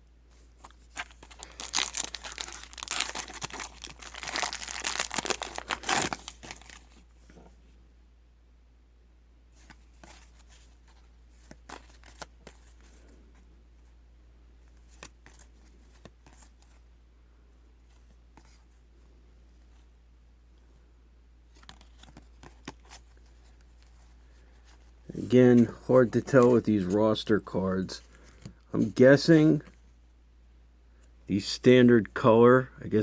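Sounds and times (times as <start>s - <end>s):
low steady hum: 0.0s - 33.0s
trading cards rustling: 0.4s - 7.0s, 9.6s - 13.2s, 21.5s - 29.7s.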